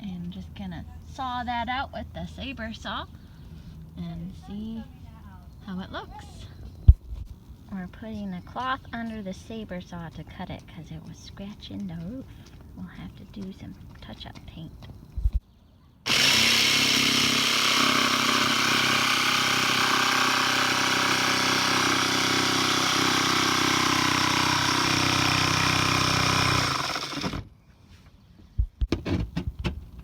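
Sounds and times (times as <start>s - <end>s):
saw cutting sheet metal: 16.1s - 27.4s.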